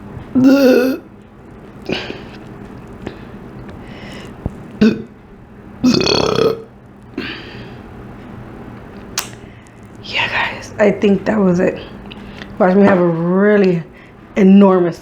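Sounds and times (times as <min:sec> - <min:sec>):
woman burping: 0:00.4 - 0:01.1, 0:04.8 - 0:05.1, 0:05.8 - 0:07.4.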